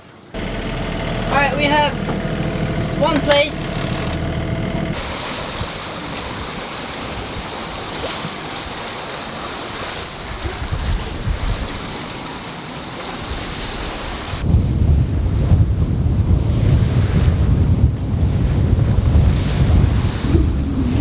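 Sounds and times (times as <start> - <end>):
wind buffeting microphone: 0.4 - 12.5, 13.2 - 21.0
water washing: 0.4 - 14.4.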